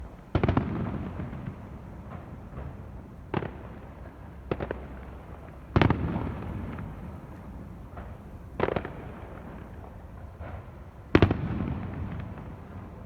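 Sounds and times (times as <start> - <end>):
fireworks exploding: 4.5 - 10.6.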